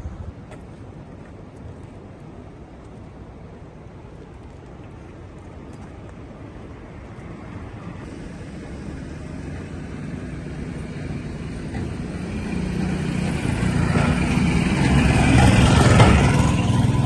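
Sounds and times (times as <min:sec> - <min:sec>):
vehicle engine approaching: 0:07.1 - 0:17.0.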